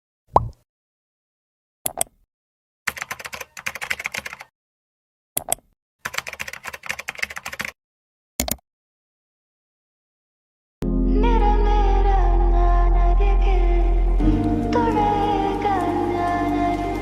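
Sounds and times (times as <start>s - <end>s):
rapid key clicking: 2.9s - 4.5s, 6.1s - 7.7s.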